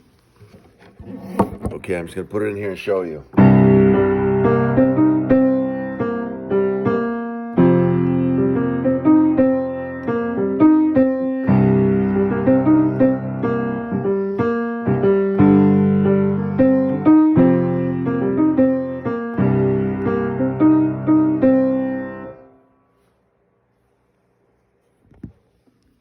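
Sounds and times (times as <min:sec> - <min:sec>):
piano improvising melody: 0:03.3 - 0:22.6.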